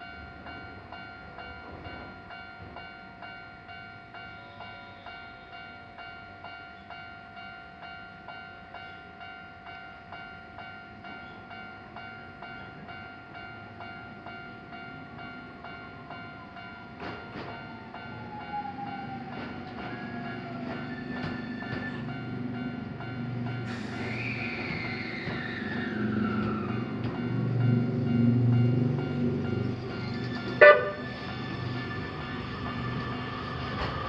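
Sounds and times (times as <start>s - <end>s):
train motor whine: 23.7s - 27.8s.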